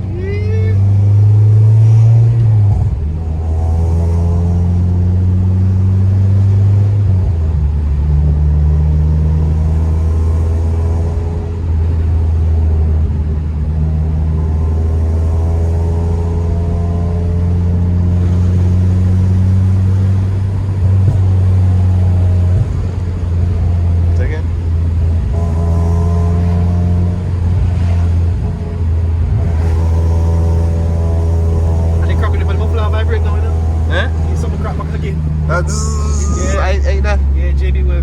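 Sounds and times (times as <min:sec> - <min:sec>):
car engine and exhaust droning: 0:00.0 - 0:38.0.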